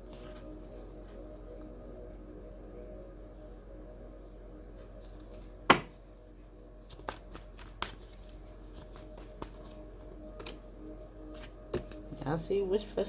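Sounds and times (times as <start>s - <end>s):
card slapping on a table: 5.7s - 6.0s
cards tapping and flicking: 6.9s - 9.8s.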